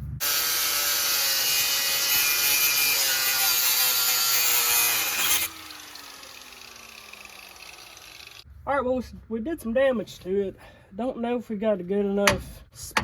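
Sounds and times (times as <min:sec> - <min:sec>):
angle grinder cutting steel: 0:00.2 - 0:08.4
grinder winding down whine: 0:00.2 - 0:08.4.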